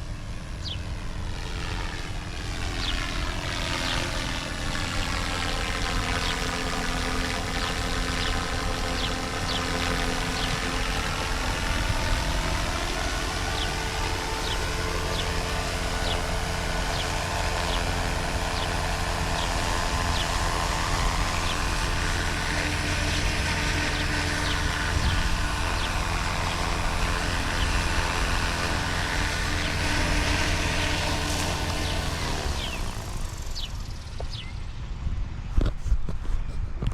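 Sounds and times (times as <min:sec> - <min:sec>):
helicopter engine and rotor drone: 0:00.0 - 0:36.9.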